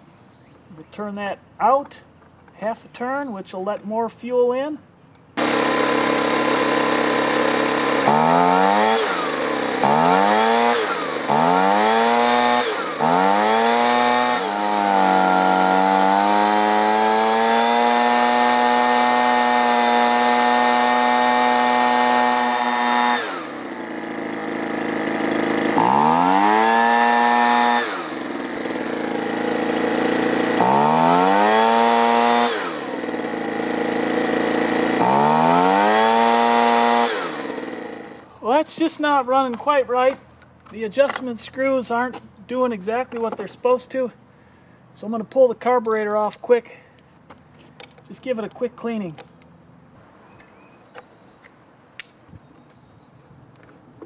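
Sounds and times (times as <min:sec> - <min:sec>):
leaf blower engine revving: 0:05.4 - 0:39.2.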